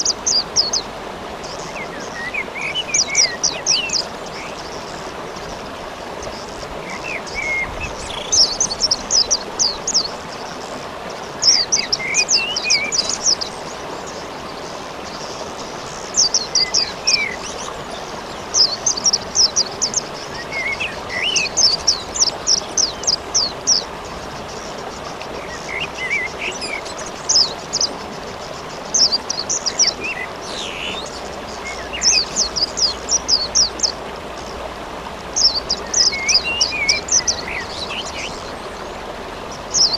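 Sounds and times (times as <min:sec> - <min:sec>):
songbirds chirping: 0:00.0 - 0:39.9
lower bird call notes: 0:29.0 - 0:33.8.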